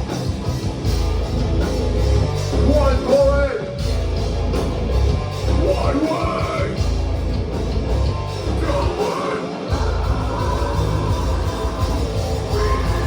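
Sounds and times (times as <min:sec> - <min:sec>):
hardcore punk band playing: 0:00.0 - 0:13.0
shouted vocals: 0:08.5 - 0:13.0.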